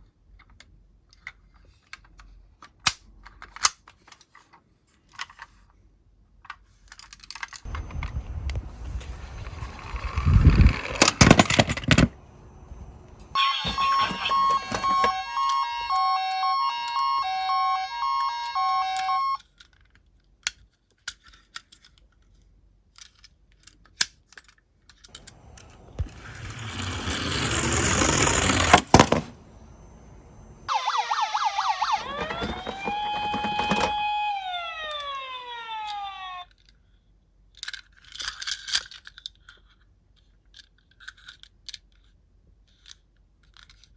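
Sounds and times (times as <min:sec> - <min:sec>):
toy car rattling down slope: 0:08.7 - 0:12.2, 0:25.1 - 0:29.3, 0:31.8 - 0:36.5
toy electronic siren: 0:13.3 - 0:19.4, 0:30.1 - 0:36.5.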